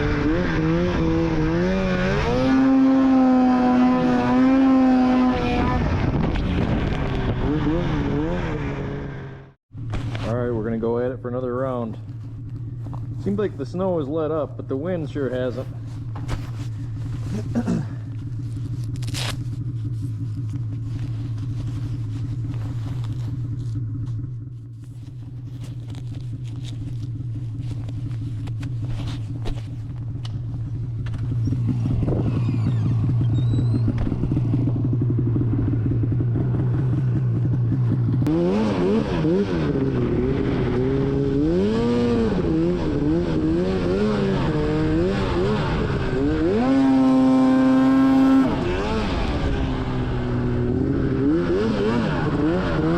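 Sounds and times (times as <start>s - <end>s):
snowmobile engine revving: 0.0s - 9.5s, 13.2s - 23.8s, 30.9s - 52.9s.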